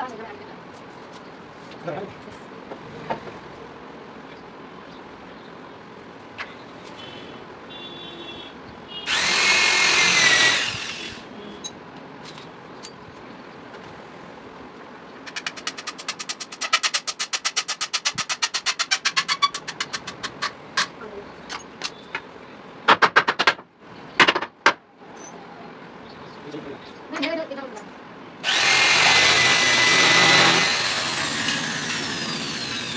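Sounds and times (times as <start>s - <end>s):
power drill whining: 9.1s - 11.2s, 28.4s - 32.9s.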